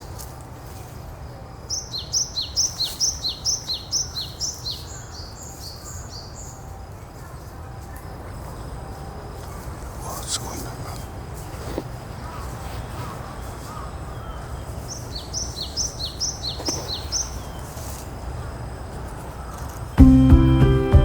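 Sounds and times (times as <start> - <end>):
songbird singing repeated notes: 1.7 - 6.6, 12.2 - 17.8.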